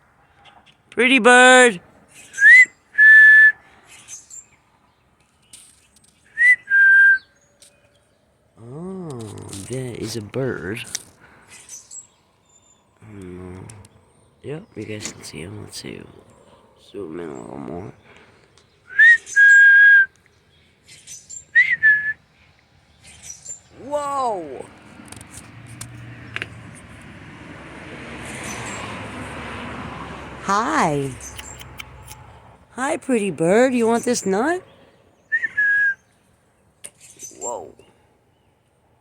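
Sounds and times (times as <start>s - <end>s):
person whistling: 2.4s - 3.6s, 6.4s - 7.2s, 18.9s - 20.1s, 35.3s - 36.0s.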